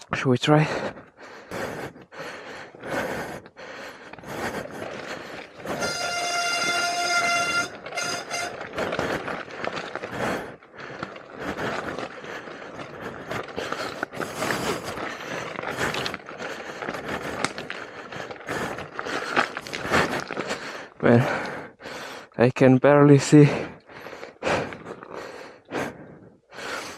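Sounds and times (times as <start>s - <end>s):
bike clattering over rough trail: 3.2s - 22.2s, 23.0s - 25.6s.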